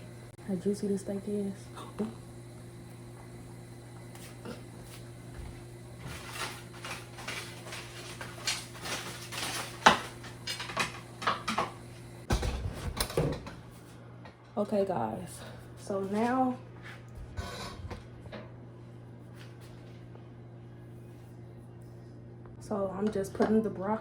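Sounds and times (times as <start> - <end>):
steady low hum: 0.0 - 24.0
utensils clinking on dishes: 6.0 - 11.8.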